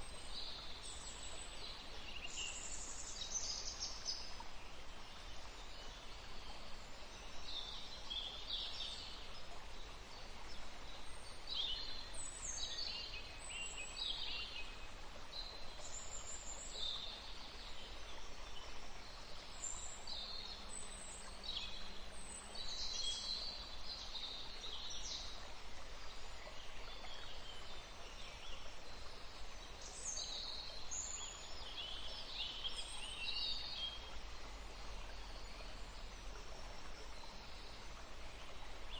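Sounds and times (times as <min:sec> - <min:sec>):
low background rumble and hiss: 0:00.0 - 0:38.9
songbirds chirping: 0:00.0 - 0:38.9.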